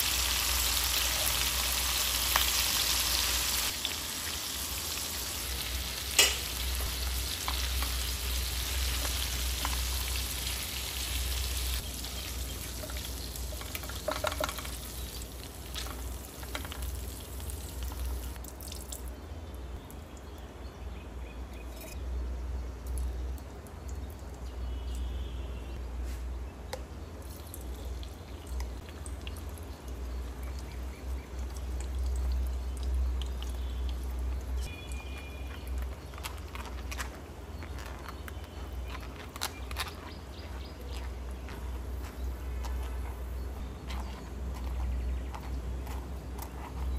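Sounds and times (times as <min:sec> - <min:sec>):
food sizzling in hot oil: 0:00.0 - 0:18.4.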